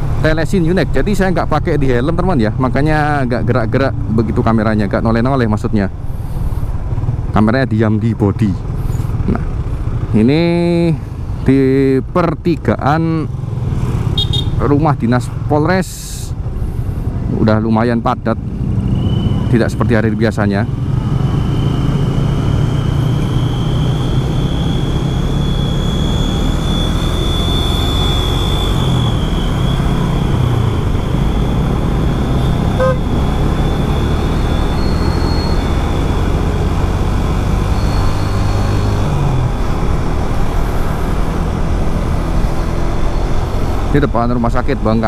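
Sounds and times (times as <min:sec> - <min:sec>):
wind and road noise: 0:00.0 - 0:45.0
thin high whine: 0:21.2 - 0:36.4.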